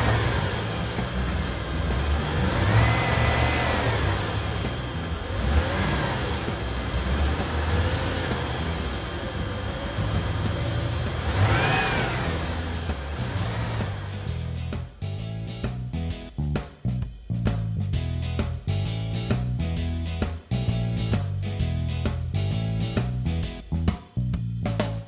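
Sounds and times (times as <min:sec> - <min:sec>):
toy boat motors whining: 0:00.0 - 0:04.8, 0:05.4 - 0:14.4
steady low rumble: 0:00.0 - 0:11.4.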